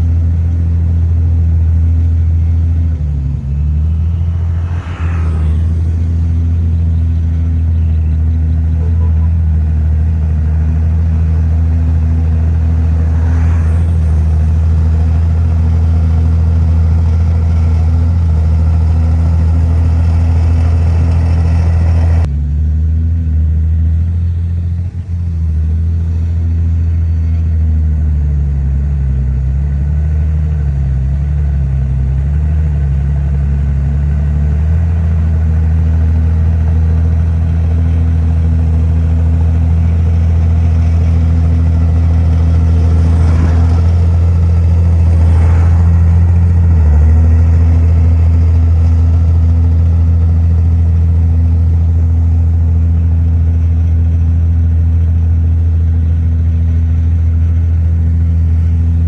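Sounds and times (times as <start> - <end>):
bulldozer diesel engine running: 0.0 - 59.0.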